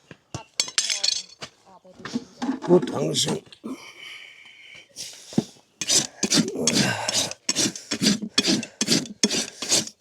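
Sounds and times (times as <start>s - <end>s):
rasp filing a hoof: 5.8s - 10.0s.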